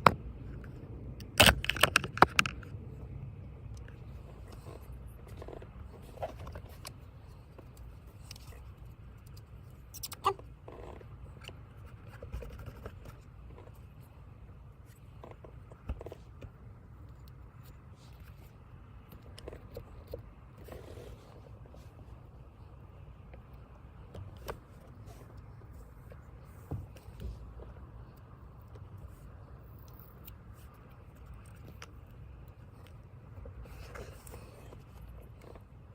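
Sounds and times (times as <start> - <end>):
steady low hum: 0.0 - 35.9
tape rustling and scraping: 3.7 - 14.2, 24.0 - 35.8.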